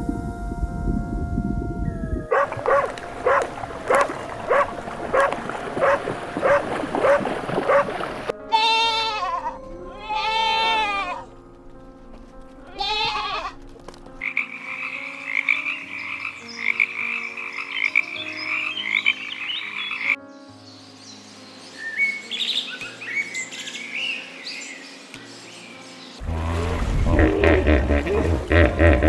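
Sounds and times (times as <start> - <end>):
wavering bleating calls: 8.5 - 11.3, 12.7 - 13.6.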